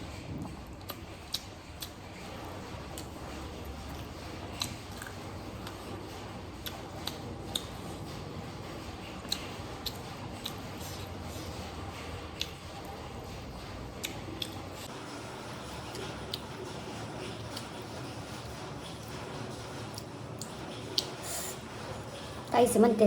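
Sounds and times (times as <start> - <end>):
person chewing: 3.9 - 5.8, 9.2 - 11.5, 14.0 - 14.9.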